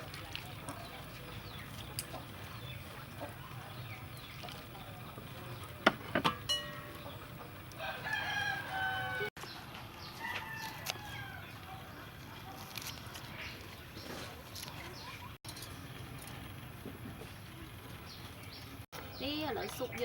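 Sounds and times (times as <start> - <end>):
sharp knocks: 5.8 - 6.6
rooster crowing: 7.8 - 9.3, 10.2 - 11.6.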